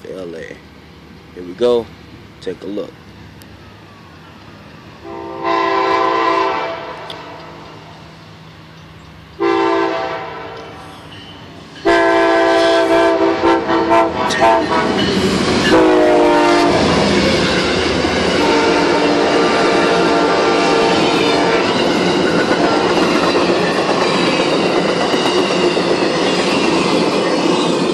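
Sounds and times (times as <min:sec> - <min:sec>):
train air horn blasts: 0:05.0 - 0:07.7, 0:09.4 - 0:11.1, 0:11.8 - 0:15.0, 0:15.6 - 0:16.9, 0:18.3 - 0:21.8
train wheels on rail joints: 0:06.9 - 0:27.9.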